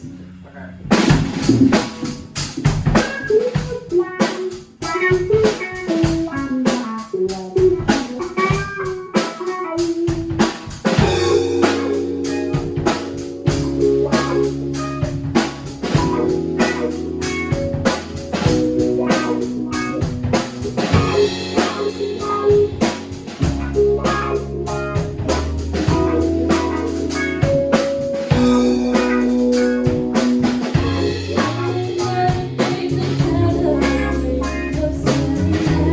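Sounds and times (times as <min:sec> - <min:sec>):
drum kit beat: 0:00.9 - 0:35.9
guitar: 0:01.0 - 0:35.9
bass line: 0:10.9 - 0:35.9.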